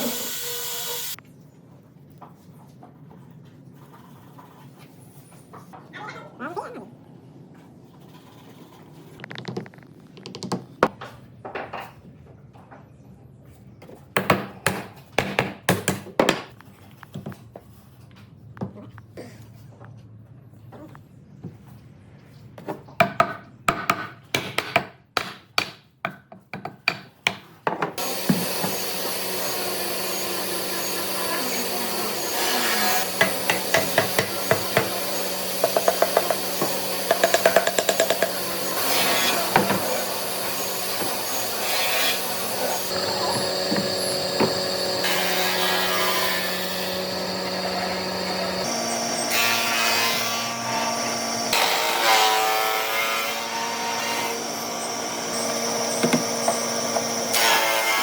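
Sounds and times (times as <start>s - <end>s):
power tool working wood: 0.0s - 1.2s, 28.0s - 58.0s.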